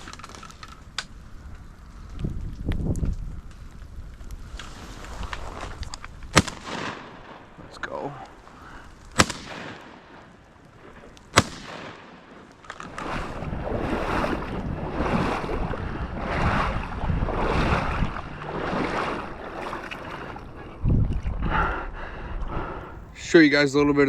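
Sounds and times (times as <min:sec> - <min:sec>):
shotgun shot: 0:06.3 - 0:07.5, 0:09.2 - 0:10.3, 0:11.3 - 0:12.4.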